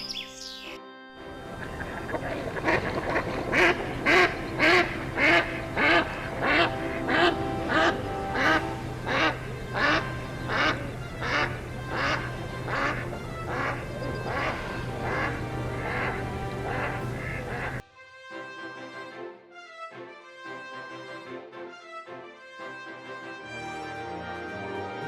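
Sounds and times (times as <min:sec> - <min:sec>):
duck quacking: 0:01.3 - 0:17.8.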